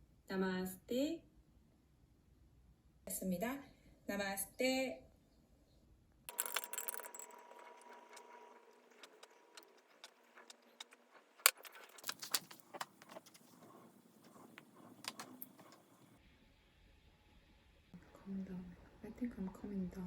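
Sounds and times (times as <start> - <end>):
small hard objects clinking: 6.3 - 13.5.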